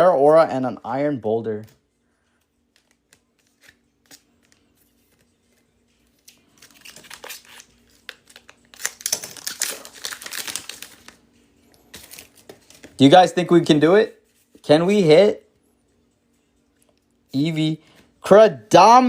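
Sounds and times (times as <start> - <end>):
foil wrapper crinkling and tearing: 6.2 - 11.2.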